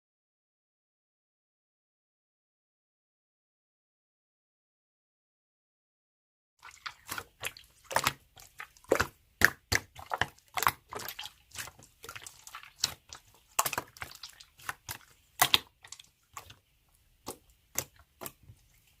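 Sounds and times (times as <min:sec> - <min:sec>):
slime squelching with wet pops: 0:06.6 - 0:19.0.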